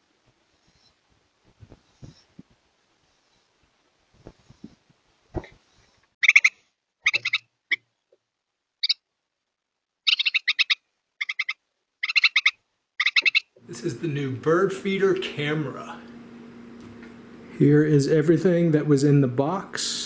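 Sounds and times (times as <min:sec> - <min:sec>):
fast chattering animal calls: 0:07.1 - 0:07.4, 0:10.1 - 0:13.4.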